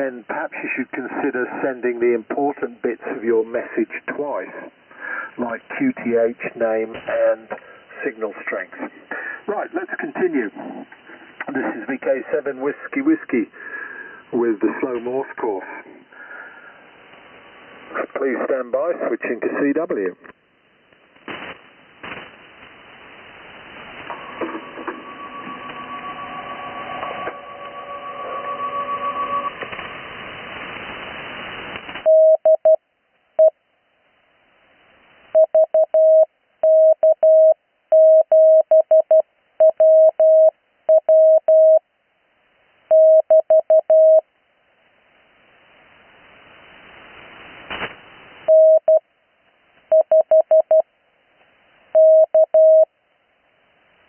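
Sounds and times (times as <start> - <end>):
radio band hiss: 0.0 - 27.4, 28.8 - 32.1, 45.5 - 48.5
morse code tone: 32.1 - 32.8, 35.4 - 41.8, 42.9 - 44.2, 48.5 - 49.0, 49.9 - 50.8, 52.0 - 52.9.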